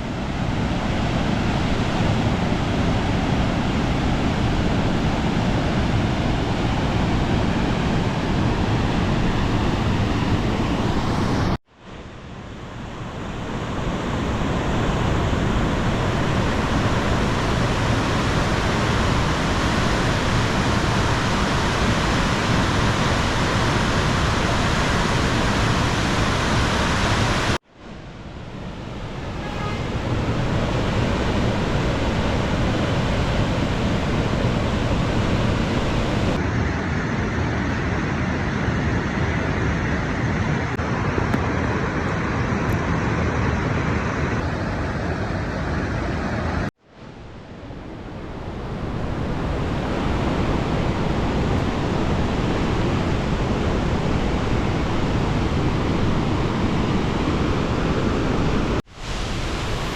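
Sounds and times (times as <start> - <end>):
waterfall rushing: 13.4 - 27.6, 29.2 - 36.4, 49.1 - 59.9.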